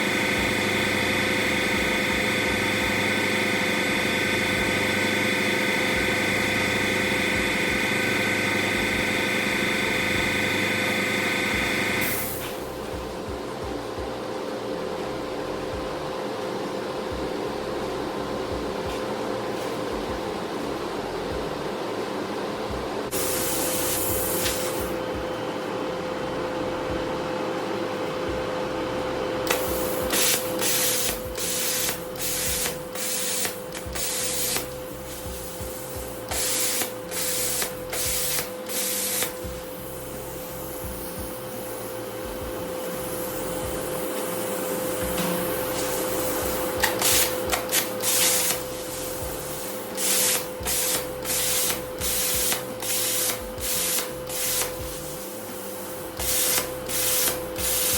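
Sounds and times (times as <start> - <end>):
steady hum: 0.0 - 57.9
plasma cutter hissing: 9.8 - 12.8, 23.1 - 25.0, 29.5 - 57.9.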